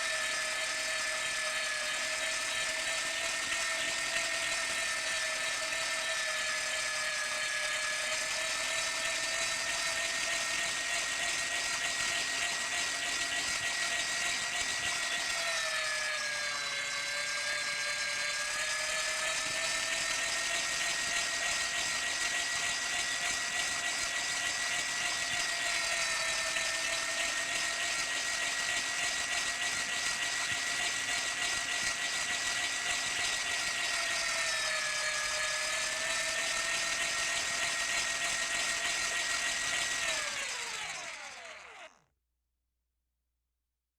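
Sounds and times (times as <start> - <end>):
meat grinder motor whining: 0.0 - 42.1.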